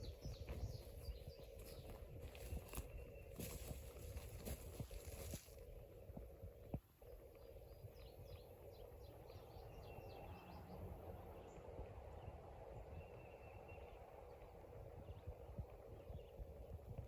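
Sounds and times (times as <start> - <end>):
bird chirps: 0.0 - 5.4, 7.3 - 15.3
low outdoor rumble: 0.0 - 17.0.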